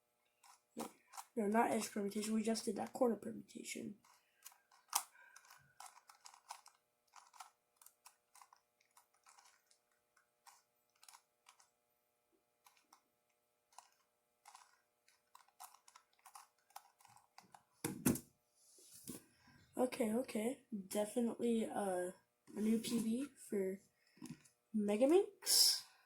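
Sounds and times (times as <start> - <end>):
puzzle cube faces clicking: 4.0 - 9.8, 13.7 - 17.7.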